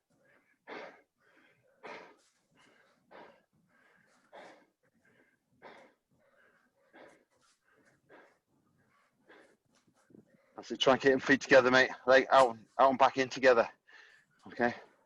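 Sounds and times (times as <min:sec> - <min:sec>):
person breathing heavily: 0:00.0 - 0:10.7, 0:13.7 - 0:15.0.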